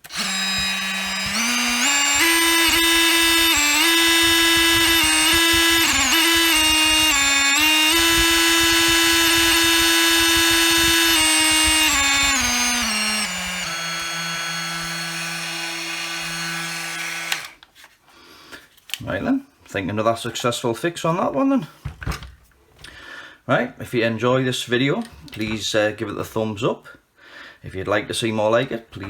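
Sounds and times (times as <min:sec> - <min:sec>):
oscillating multi-tool buzzing: 0:00.0 - 0:17.6.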